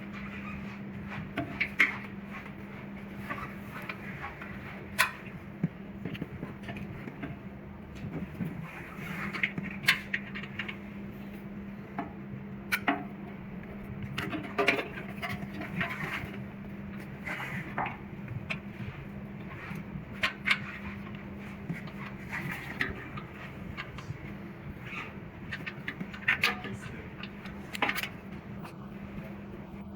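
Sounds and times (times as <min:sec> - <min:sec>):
steady low hum: 0:00.0 - 0:29.9.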